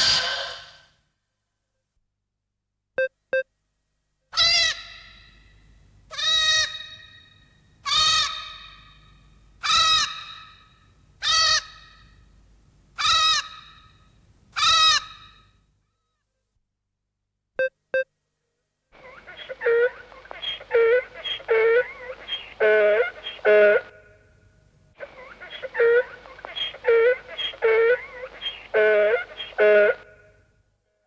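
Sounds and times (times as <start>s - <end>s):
monster cry rising and falling: 0.0s - 0.8s.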